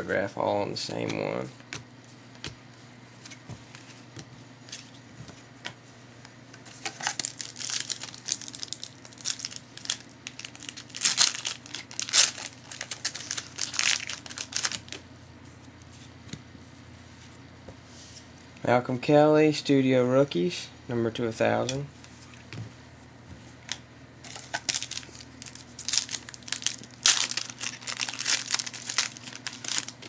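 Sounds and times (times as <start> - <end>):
foil wrapper crinkling and tearing: 6.8 - 15.0, 24.3 - 30.0.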